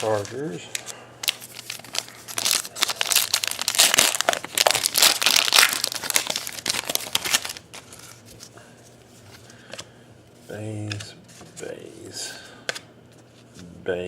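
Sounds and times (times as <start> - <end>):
wrapper tearing and crinkling: 0.0 - 8.0.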